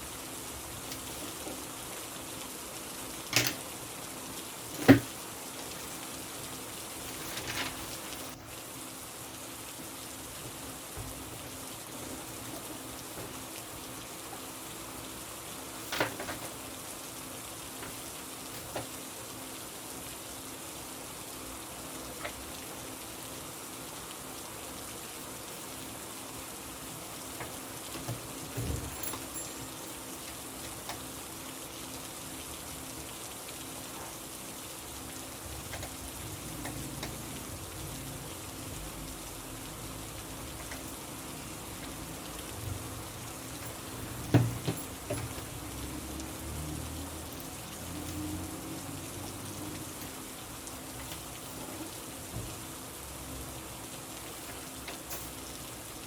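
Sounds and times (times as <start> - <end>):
rain falling: 0.0 - 56.0.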